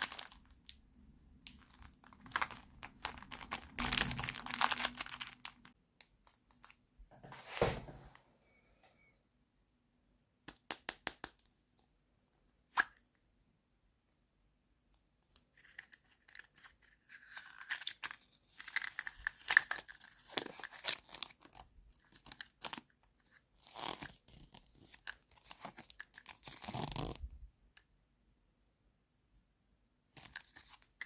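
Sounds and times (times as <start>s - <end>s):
plastic packaging crinkling and tearing: 0.0s - 0.7s, 1.5s - 6.8s, 15.6s - 27.2s, 30.2s - 31.0s.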